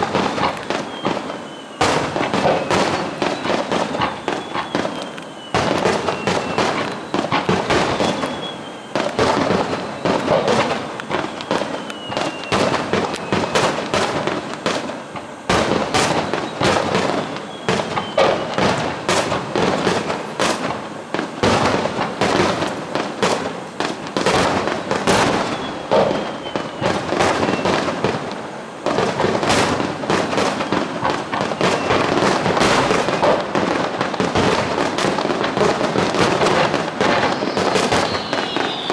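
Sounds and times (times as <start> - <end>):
fireworks shell bursts: 0.0 - 38.9
falling whistle: 0.7 - 13.8, 16.0 - 18.6, 25.2 - 28.0, 30.4 - 33.2, 37.1 - 38.9.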